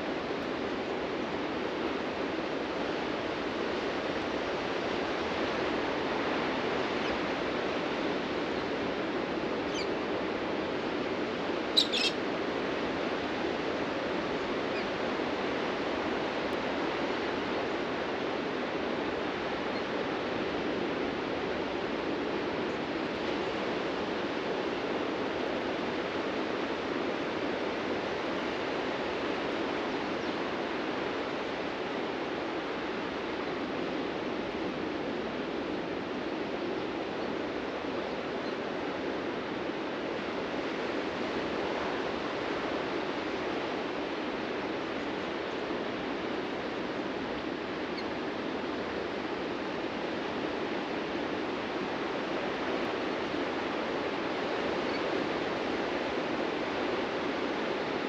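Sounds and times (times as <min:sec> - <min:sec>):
bird calling: 0:09.7 - 0:09.9, 0:11.8 - 0:12.2.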